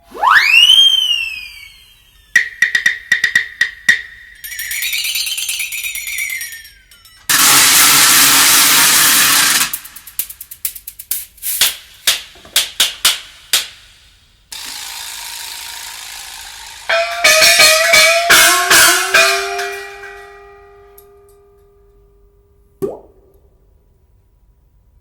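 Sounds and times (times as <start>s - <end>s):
struck ringing notes: 0.0s - 8.0s, 16.8s - 23.2s
steady hiss: 8.2s - 16.9s.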